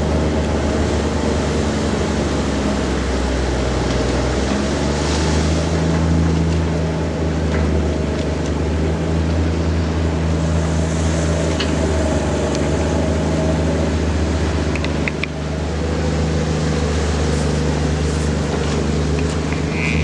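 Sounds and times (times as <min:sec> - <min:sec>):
large diesel engine running: 0:00.0 - 0:20.0
faint clicks: 0:14.7 - 0:15.4.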